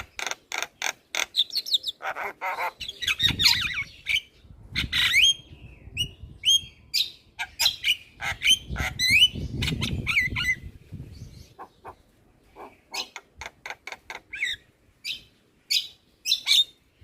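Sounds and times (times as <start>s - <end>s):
myna calling: 11.4s - 14.6s.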